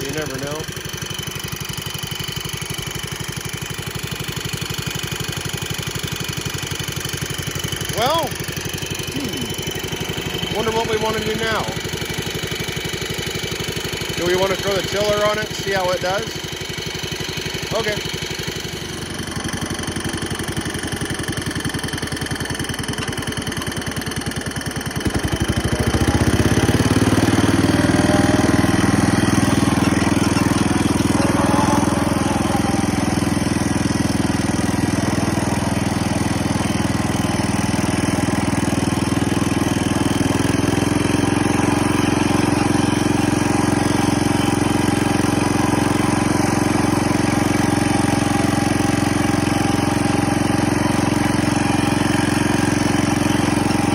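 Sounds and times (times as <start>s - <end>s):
garden tractor engine: 0.0s - 53.9s.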